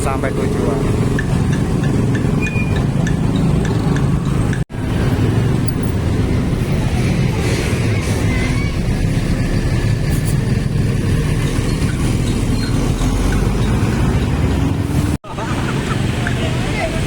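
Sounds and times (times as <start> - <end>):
heavy bus engine rumble: 0.0 - 17.0
road traffic: 0.0 - 17.0.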